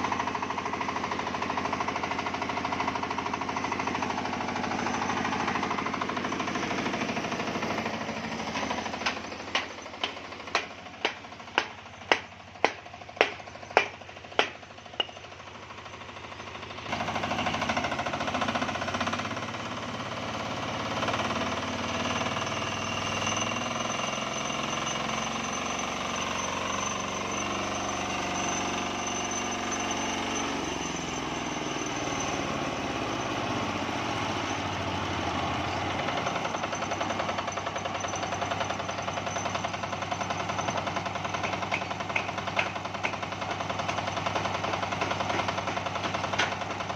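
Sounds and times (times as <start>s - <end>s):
diesel engine knocking: 0.0s - 46.9s.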